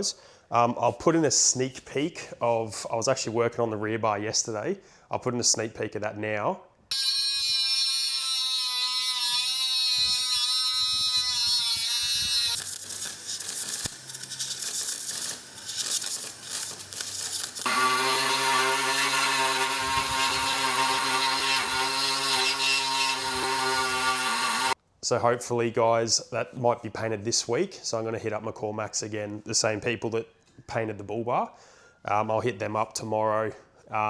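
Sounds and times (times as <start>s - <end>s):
electric power tool whining: 6.9s - 24.8s.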